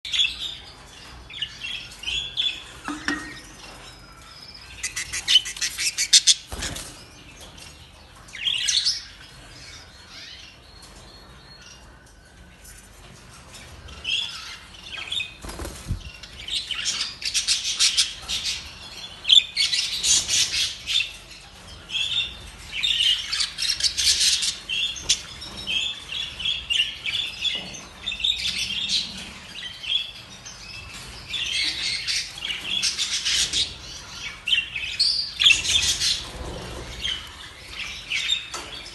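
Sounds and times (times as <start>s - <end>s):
budgerigars chirping: 4.6s - 6.9s.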